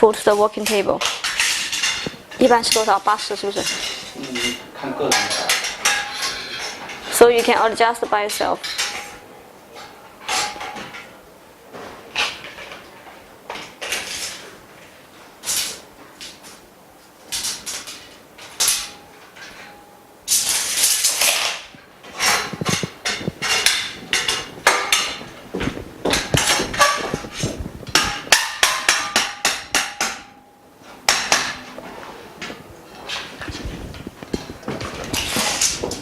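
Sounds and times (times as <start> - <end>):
metal frame bars knocking: 22.0 - 30.4.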